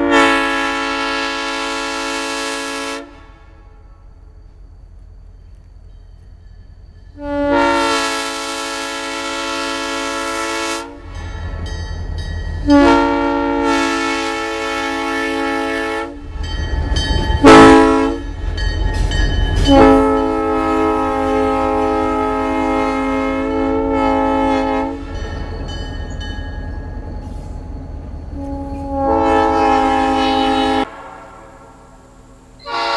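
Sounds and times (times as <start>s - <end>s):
air horn blasts: 0.0s - 3.8s, 7.2s - 11.0s, 12.6s - 16.2s, 17.4s - 18.3s, 19.7s - 25.0s, 28.4s - 30.9s, 32.6s - 32.9s.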